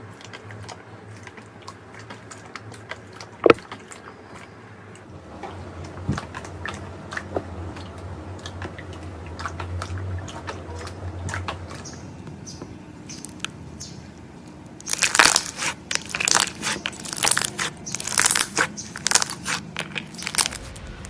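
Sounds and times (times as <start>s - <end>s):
crackling popping clicks: 5.4s - 20.8s
slime squeezed by hand: 14.8s - 20.8s.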